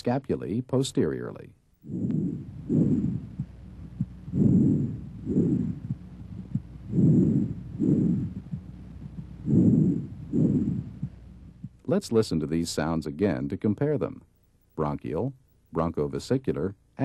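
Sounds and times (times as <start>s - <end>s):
breathing through stethoscope: 1.9s - 3.5s, 4.3s - 6.0s, 6.9s - 8.6s, 9.4s - 11.1s.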